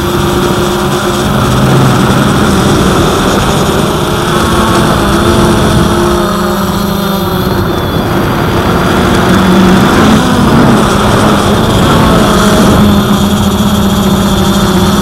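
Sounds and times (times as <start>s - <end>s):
quadcopter motors humming: 0.0s - 15.0s
wind buffeting microphone: 0.0s - 15.0s.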